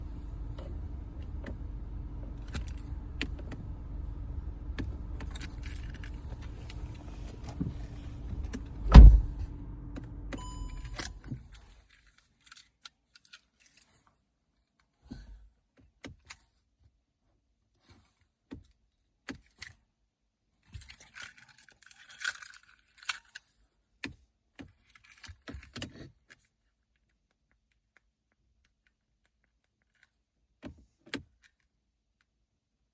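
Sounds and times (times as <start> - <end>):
low running hum: 0.0 - 11.5
loud thud: 8.8 - 9.6
short electronic chime: 10.4 - 11.2.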